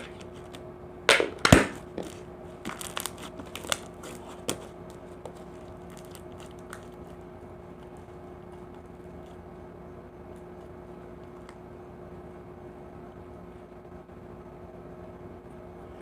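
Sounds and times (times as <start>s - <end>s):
faint steady hum: 0.0s - 16.0s
slime squishing: 1.9s - 11.5s.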